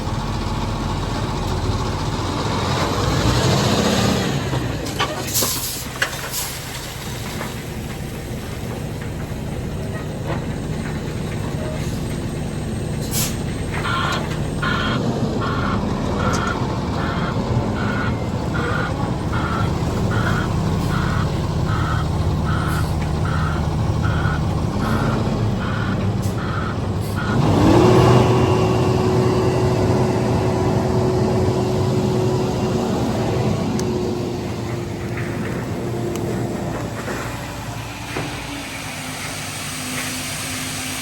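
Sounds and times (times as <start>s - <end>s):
diesel engine revving: 0.0s - 41.0s
reversing alarm beeping: 13.7s - 32.9s.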